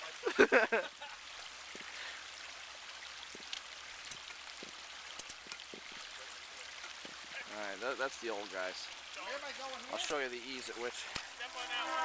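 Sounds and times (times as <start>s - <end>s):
stream running: 0.0s - 12.0s.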